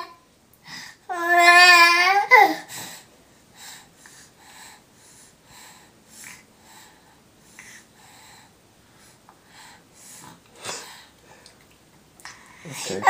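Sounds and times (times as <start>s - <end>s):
child breathing and sniffling: 2.5s - 11.2s.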